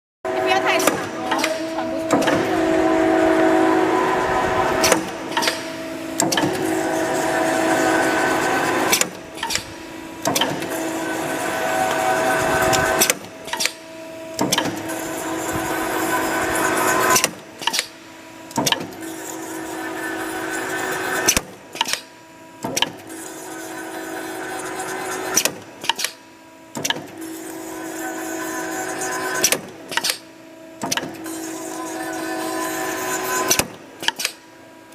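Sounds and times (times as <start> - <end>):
machine humming: 0.3 - 34.9
sharp machine clacks: 0.8 - 2.5, 4.8 - 19.5.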